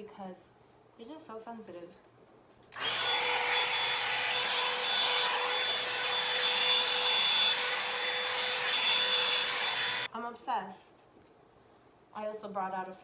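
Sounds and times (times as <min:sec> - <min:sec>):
hair dryer blowing: 0:02.7 - 0:10.1.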